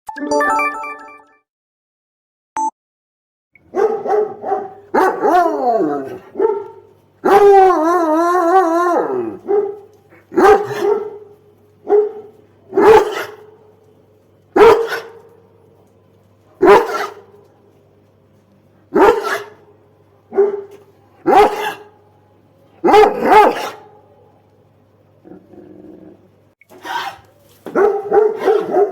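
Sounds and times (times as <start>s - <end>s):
hound barking: 3.7s - 8.0s, 8.9s - 13.7s, 14.5s - 15.4s, 16.6s - 17.4s, 18.9s - 19.7s, 20.3s - 22.0s, 22.8s - 24.4s, 26.8s - 28.9s
wavering dog howl: 5.0s - 6.3s, 7.2s - 9.5s.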